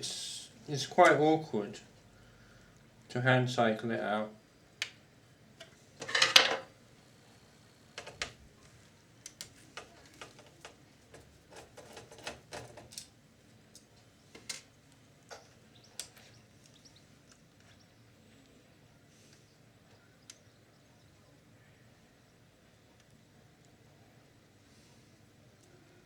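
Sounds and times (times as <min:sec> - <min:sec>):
small clicks of tape mechanism: 0:09.2 - 0:13.1.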